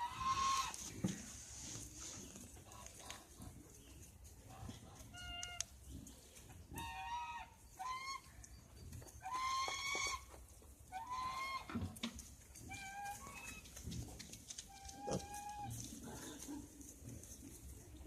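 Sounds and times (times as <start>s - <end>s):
piglets squealing: 0.0s - 0.7s, 9.2s - 10.3s, 10.9s - 11.7s, 14.9s - 15.8s.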